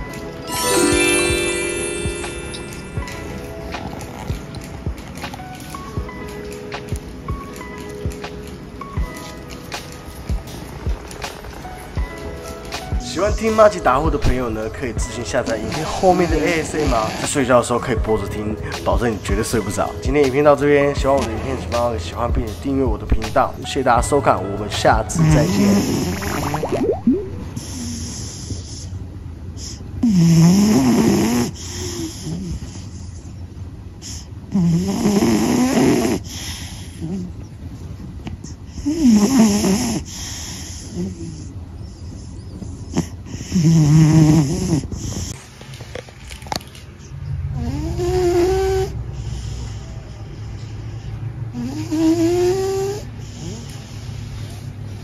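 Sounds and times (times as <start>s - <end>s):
cat snoring: 30.0s - 33.0s, 34.5s - 37.3s, 38.8s - 41.5s, 42.2s - 45.2s, 47.6s - 49.8s, 51.6s - 54.0s
cat breathing softly: 49.0s - 51.7s.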